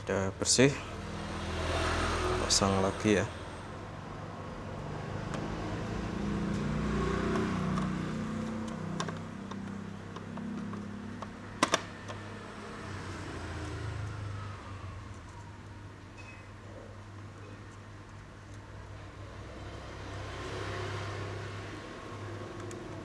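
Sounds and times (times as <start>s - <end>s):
low vehicle-like hum: 0.0s - 23.0s
laptop parts clicking: 6.5s - 12.3s.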